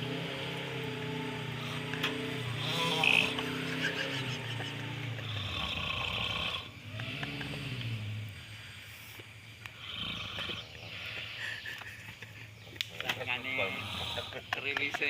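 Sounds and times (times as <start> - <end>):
person snoring: 2.5 - 4.5, 5.1 - 9.0, 9.8 - 11.4, 13.5 - 14.6.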